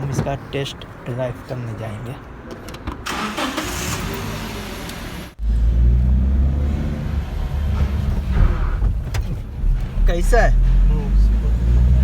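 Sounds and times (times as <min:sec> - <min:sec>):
van engine and road rumble: 0:00.0 - 0:12.0.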